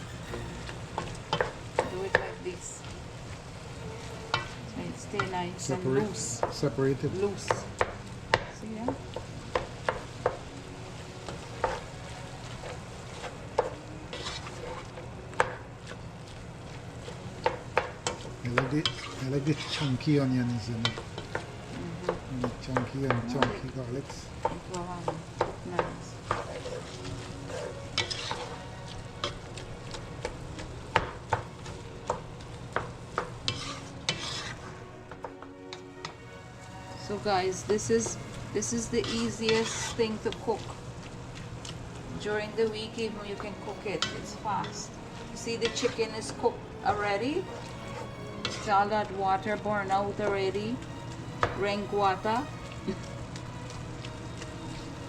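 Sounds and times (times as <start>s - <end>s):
meat sizzling in a pot: 0.0s - 55.0s
utensil scraping against pot: 12.6s - 15.0s, 17.4s - 23.0s, 27.5s - 30.2s, 33.2s - 34.8s, 37.0s - 40.8s.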